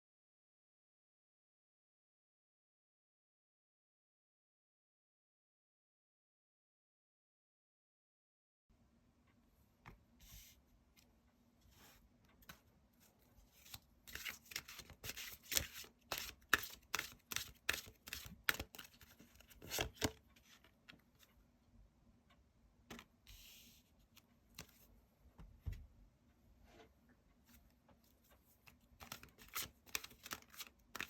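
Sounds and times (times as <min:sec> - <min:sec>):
cards shuffling: 0:13.6 - 0:20.6, 0:28.6 - 0:31.0.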